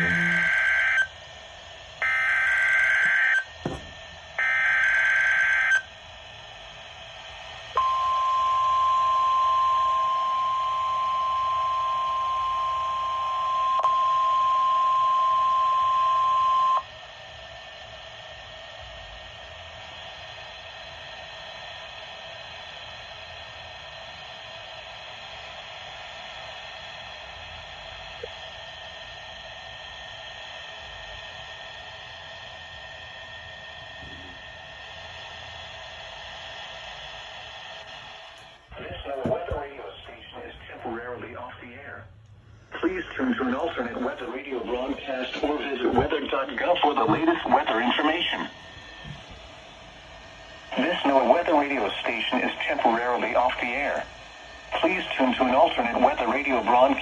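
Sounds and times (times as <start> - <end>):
steady alert tone: 0.0 - 1.0
digital header tone bursts: 0.0 - 1.1
radio hiss: 0.0 - 3.9, 22.4 - 57.0.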